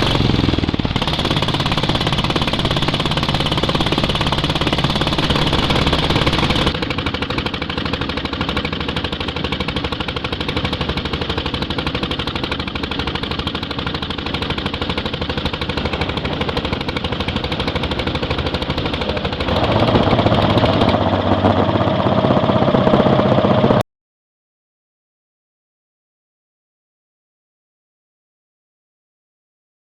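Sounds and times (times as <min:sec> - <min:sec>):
motorcycle engine running: 0:00.0 - 0:23.8.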